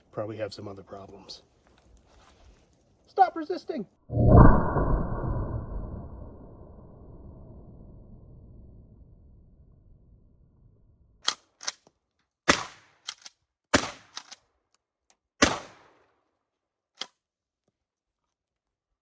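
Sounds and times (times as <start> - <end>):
shotgun shots: 12.5 - 13.1, 13.7 - 14.3, 15.4 - 16.0
shotgun pump clacks: 13.0 - 14.4.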